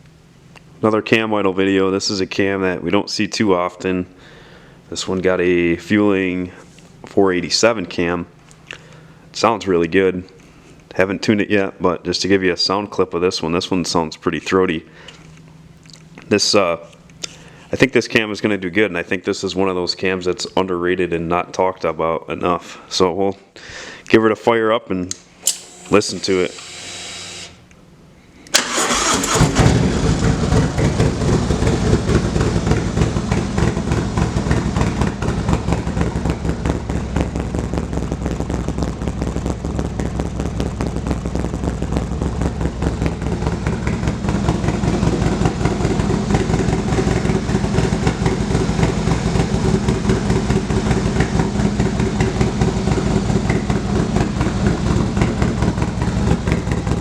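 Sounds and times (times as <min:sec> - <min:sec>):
engine starter cranking: 0:25.4 - 0:27.7, 0:28.5 - 0:33.6
motorcycle engine idling: 0:28.9 - 0:57.0.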